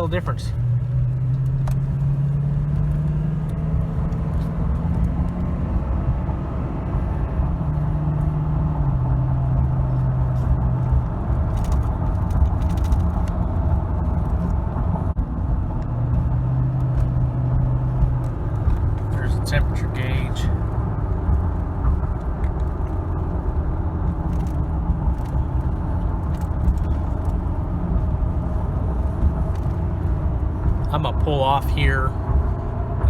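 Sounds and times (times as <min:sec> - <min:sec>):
road noise: 0:00.0 - 0:33.0
truck engine running: 0:08.7 - 0:33.0.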